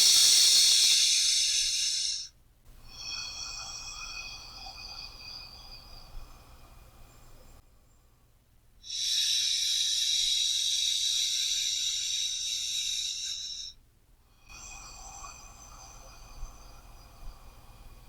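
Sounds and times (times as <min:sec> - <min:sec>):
person breathing deeply: 0:00.0 - 0:07.4, 0:08.9 - 0:13.8, 0:14.4 - 0:18.0.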